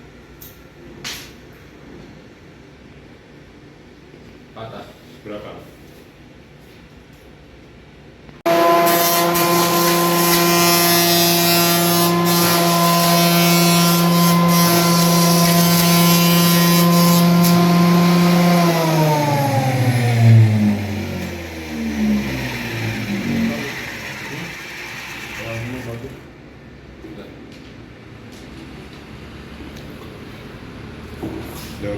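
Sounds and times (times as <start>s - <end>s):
thickness planer whining: 8.5s - 26.3s.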